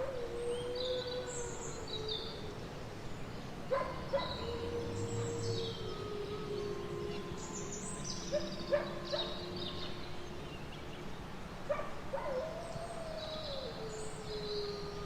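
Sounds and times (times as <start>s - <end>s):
birds chirping: 0.0s - 15.0s
wolves howling: 0.0s - 15.0s
wolves yipping: 3.7s - 4.5s, 8.3s - 9.4s, 11.7s - 12.6s.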